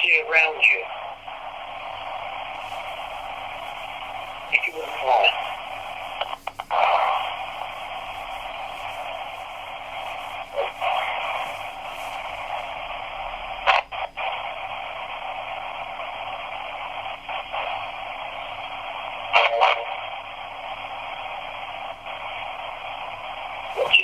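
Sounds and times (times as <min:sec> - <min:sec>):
radio static hiss: 0:00.0 - 0:24.0
short radio sound bursts: 0:00.5 - 0:13.6, 0:23.6 - 0:24.0.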